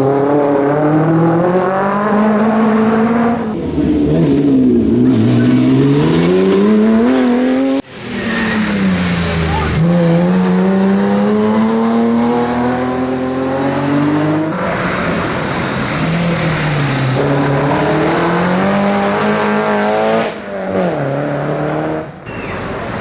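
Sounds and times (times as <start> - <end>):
rally car engine at high revs: 0.0 - 22.2.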